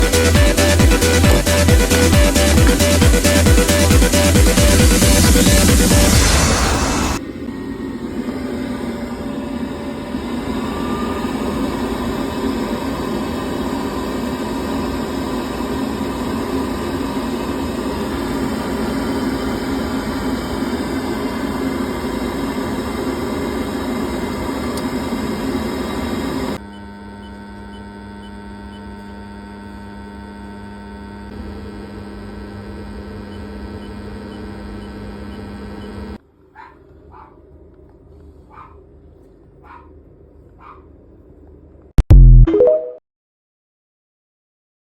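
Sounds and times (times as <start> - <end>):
steady machine noise: 0.0 - 28.9.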